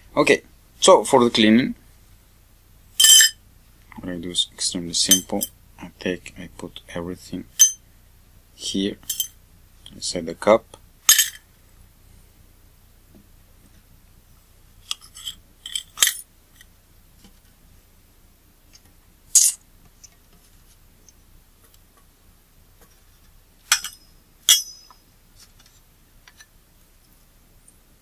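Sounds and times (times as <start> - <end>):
small metal parts clinking into cup: 3.0 - 3.4, 14.9 - 16.2.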